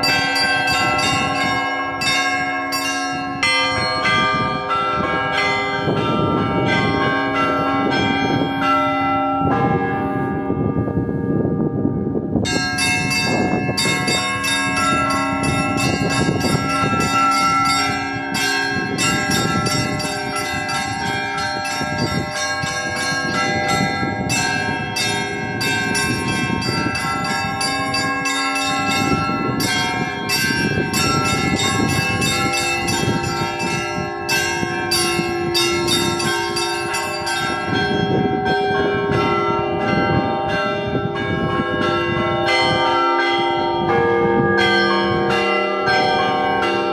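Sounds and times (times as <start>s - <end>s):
deep ringing bells: 0.0s - 46.9s
high bells struck quickly: 12.4s - 41.3s.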